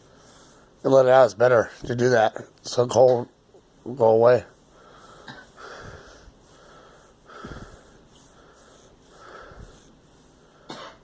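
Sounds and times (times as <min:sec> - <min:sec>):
girl breathing wheezily: 0:04.7 - 0:11.0.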